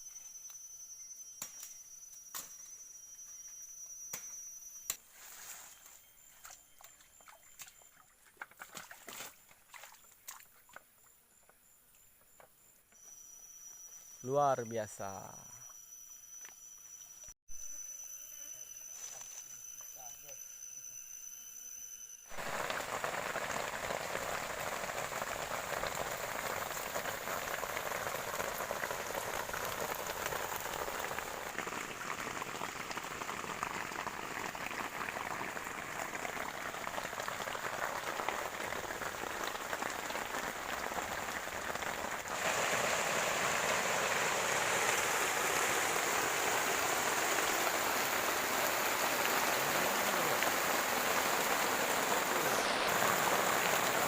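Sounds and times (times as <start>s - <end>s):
rain falling steadily: 22.3s - 54.0s.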